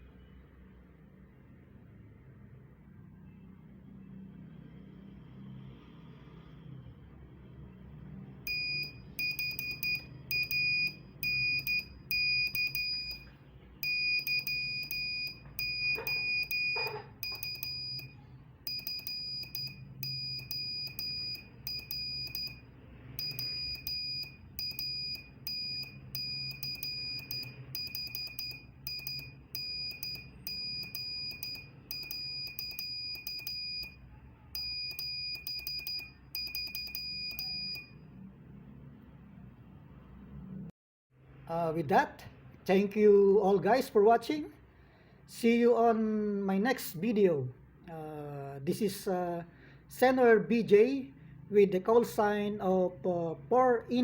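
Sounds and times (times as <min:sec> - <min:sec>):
low steady hum: 0:08.4 - 0:40.5
morse code beeps: 0:08.5 - 0:34.0, 0:34.6 - 0:38.0
key clicks: 0:09.2 - 0:18.1, 0:18.7 - 0:22.6, 0:23.2 - 0:33.9, 0:34.6 - 0:37.8.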